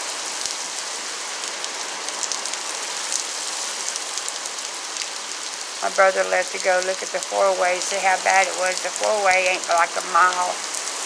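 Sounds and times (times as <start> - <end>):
heavy rain falling: 0.0 - 11.0.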